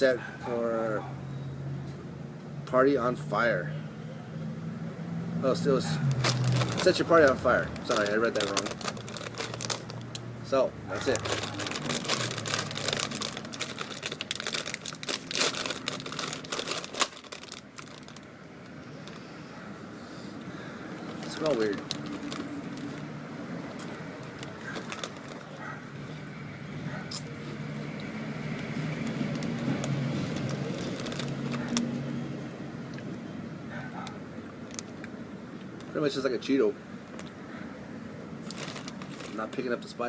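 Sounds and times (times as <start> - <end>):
plastic bag crinkling: 6.0 - 10.2, 11.0 - 19.3, 21.0 - 23.1, 23.8 - 25.7, 28.6 - 32.0, 38.4 - 39.9
crunchy snack being chewed: 11.1 - 18.1, 27.1 - 31.9.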